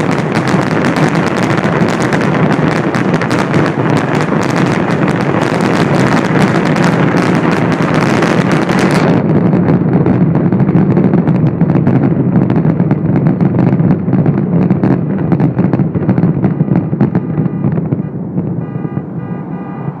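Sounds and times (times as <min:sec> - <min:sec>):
fireworks pops and crackles: 0:00.0 - 0:20.0
low rumble of fireworks bursts: 0:00.0 - 0:20.0
pitched tone: 0:16.5 - 0:20.0.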